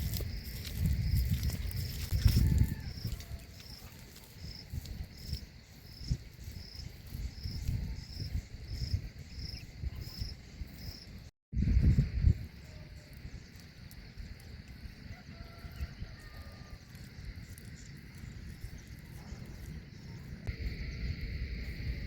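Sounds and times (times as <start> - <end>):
insect chirping: 0.0 - 22.0
low rumble: 16.8 - 22.0.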